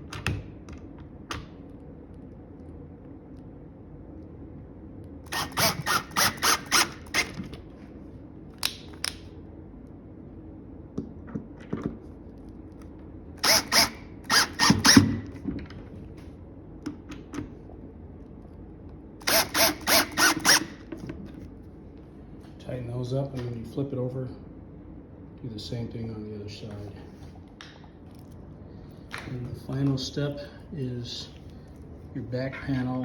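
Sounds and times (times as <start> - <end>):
screws squeaking into wood: 5.3 - 7.4, 13.4 - 15.0, 19.2 - 20.8.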